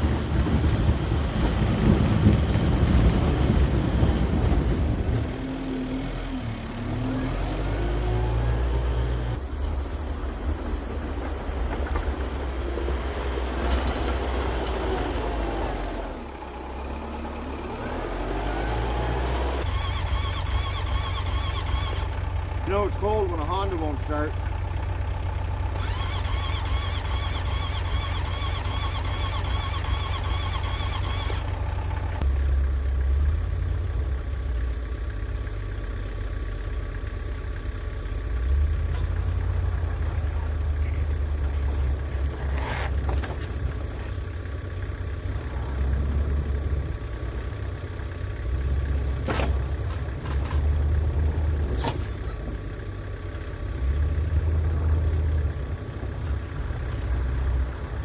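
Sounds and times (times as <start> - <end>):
tractor diesel engine rumbling: 0.0 - 58.0
sharp clicks: 19.6 - 22.2, 25.7 - 32.3.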